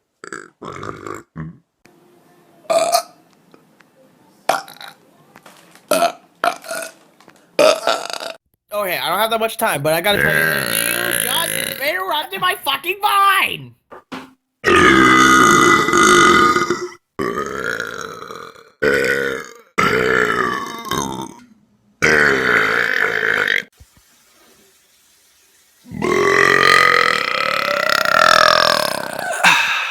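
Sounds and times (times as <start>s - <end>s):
person burping loudly: 0.2s - 1.7s, 7.6s - 8.4s, 10.2s - 11.9s, 14.6s - 21.4s, 22.0s - 23.7s, 25.9s - 29.9s.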